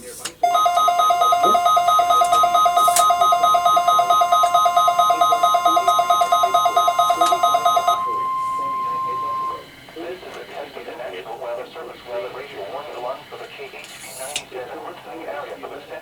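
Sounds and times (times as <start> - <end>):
warbled electronic alert alarm: 0.4 - 10.2
steady alarm tone: 0.4 - 11.2.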